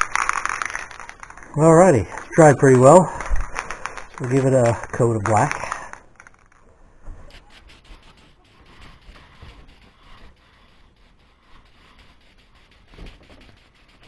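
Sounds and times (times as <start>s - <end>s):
paint rubbing on metal: 7.2s - 14.0s.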